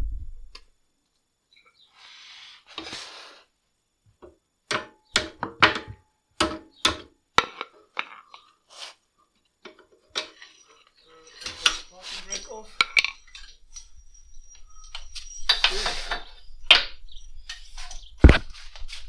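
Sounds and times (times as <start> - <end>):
short hisses: 1.9 - 3.5.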